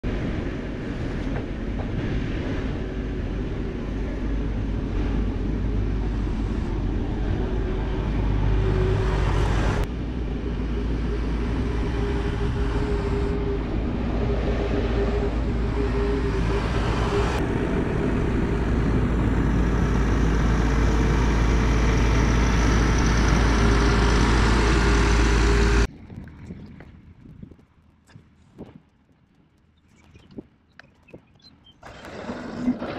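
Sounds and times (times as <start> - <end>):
machine engine running: 3.6 - 25.9.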